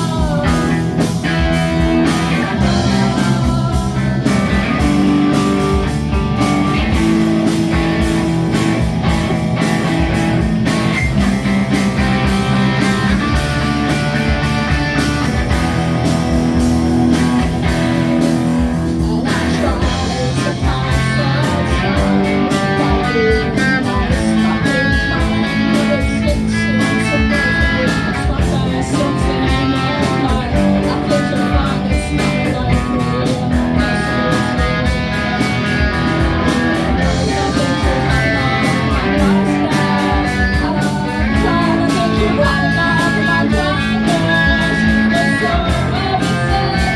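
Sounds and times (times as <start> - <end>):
electric guitar: 0.0 - 46.9
live rock band playing: 0.0 - 46.9
person singing: 0.0 - 46.9.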